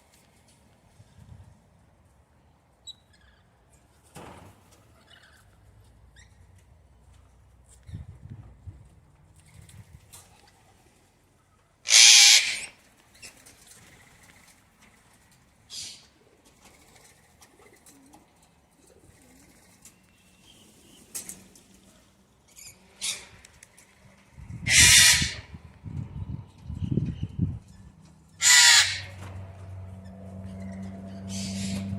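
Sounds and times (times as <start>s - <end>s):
parrots squawking: 11.9s - 12.8s, 24.7s - 25.5s, 28.4s - 29.3s, 30.5s - 31.9s.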